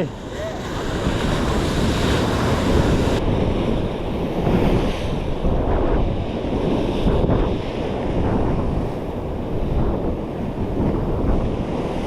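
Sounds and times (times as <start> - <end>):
ocean surf against rocks: 0.0 - 5.9
wind buffeting microphone: 0.0 - 12.0.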